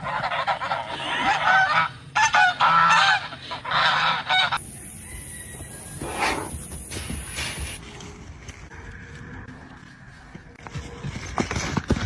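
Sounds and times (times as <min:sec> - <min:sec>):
steady high hiss: 0:04.6 - 0:07.8.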